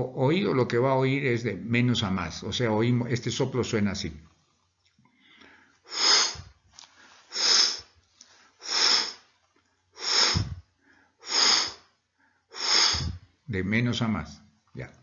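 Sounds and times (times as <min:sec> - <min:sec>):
man making breathy hissing whooshes: 0:05.9 - 0:06.5, 0:07.2 - 0:07.9, 0:08.6 - 0:09.3, 0:10.0 - 0:11.9, 0:12.5 - 0:13.3.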